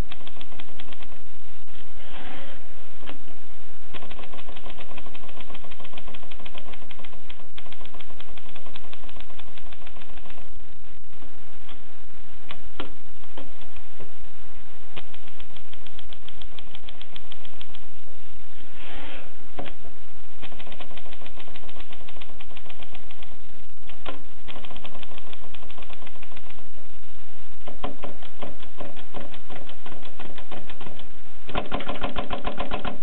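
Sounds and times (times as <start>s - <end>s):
typewriter key clacks: 27.8s - 33.0s.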